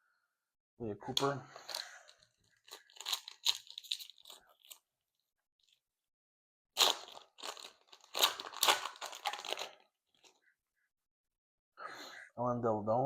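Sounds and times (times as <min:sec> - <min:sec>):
foil wrapper crinkling: 0:01.7 - 0:04.8, 0:06.8 - 0:10.4.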